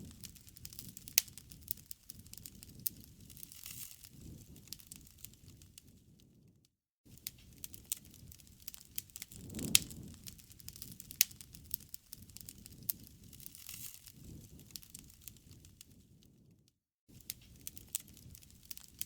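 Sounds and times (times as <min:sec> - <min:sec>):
campfire crackling and popping: 0:00.0 - 0:06.4, 0:07.1 - 0:16.5, 0:17.1 - 0:19.0
rush of burning flames: 0:00.0 - 0:06.5, 0:07.1 - 0:19.0.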